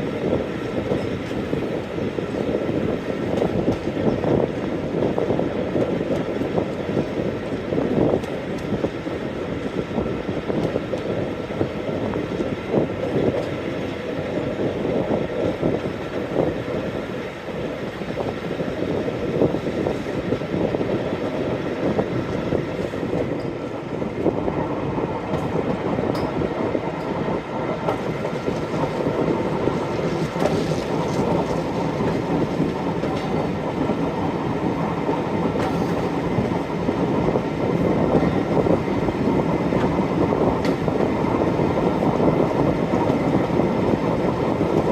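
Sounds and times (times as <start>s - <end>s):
train rolling rumble: 0.0s - 44.9s
wheels clattering over rails: 25.2s - 44.9s.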